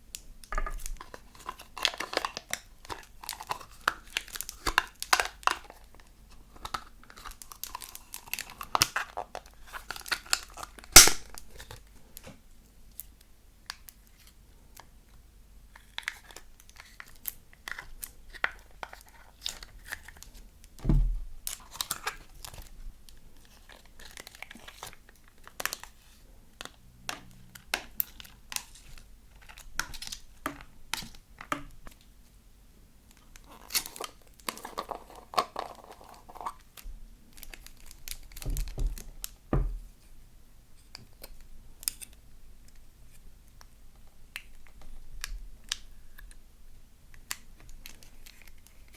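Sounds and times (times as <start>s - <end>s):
slime crackling and popping: 9.8s - 11.7s
low thud: 20.8s - 21.3s.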